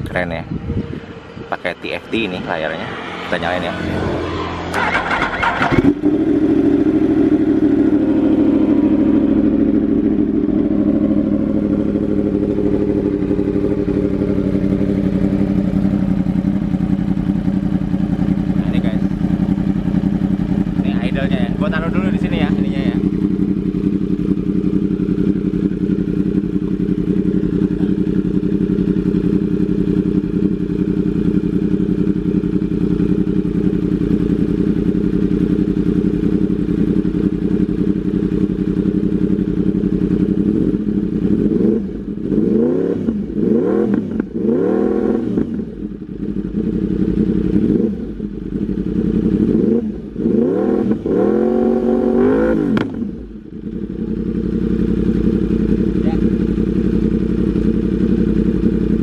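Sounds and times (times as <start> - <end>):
motorcycle engine idling and revving: 0.0 - 59.0.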